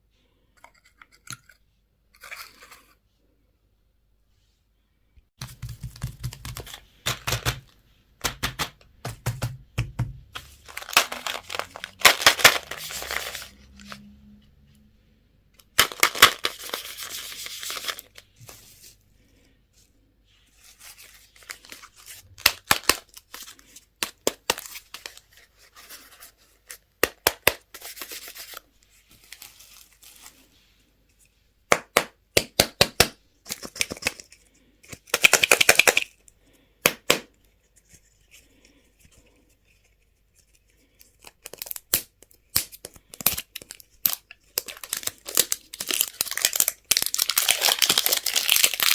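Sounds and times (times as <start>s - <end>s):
candy wrappers crinkling: 5.4s - 9.6s, 10.4s - 14.1s, 15.6s - 18.3s, 20.8s - 28.6s, 33.4s - 36.3s, 38.4s - 48.9s.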